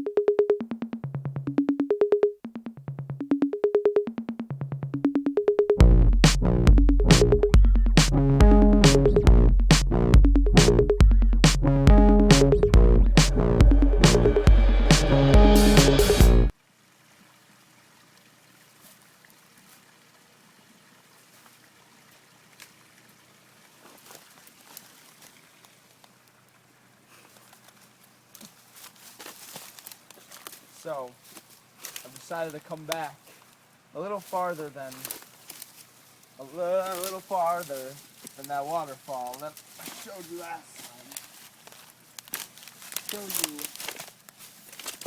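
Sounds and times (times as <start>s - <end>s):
electronic music: 0.0s - 16.5s
synthesizer staccato notes: 0.0s - 16.5s
trickling stream: 16.5s - 45.0s.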